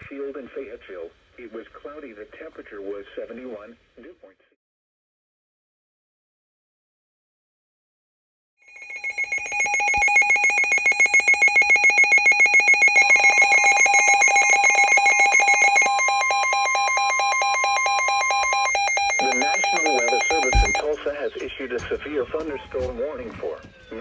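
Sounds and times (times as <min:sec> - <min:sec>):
pulsing electronic alarm beeps: 0:08.7 - 0:22.5
steady warning tone: 0:08.7 - 0:24.0.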